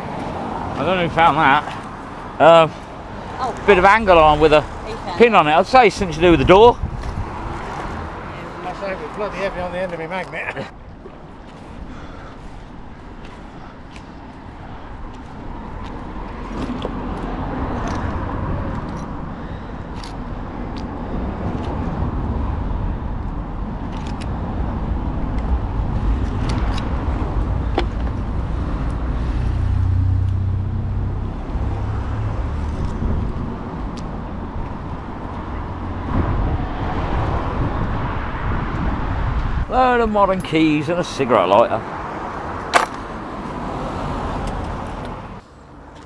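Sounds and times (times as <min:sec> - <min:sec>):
road traffic rumble: 0:00.0 - 0:46.0
sharp clicks and knocks: 0:42.6 - 0:43.1.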